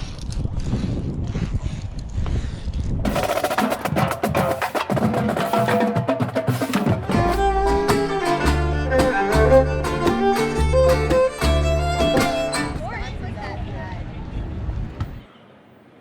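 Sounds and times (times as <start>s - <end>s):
rapid drumming: 3.1s - 12.9s
melody over pulsing bass beat: 7.1s - 12.8s.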